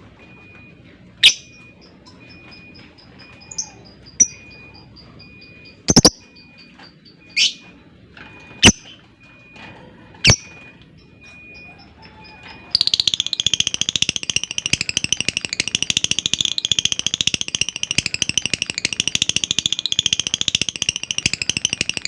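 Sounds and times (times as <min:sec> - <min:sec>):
thin repeating tone: 0:01.2 - 0:06.6, 0:11.4 - 0:22.0
faint high ticking: 0:13.0 - 0:22.0.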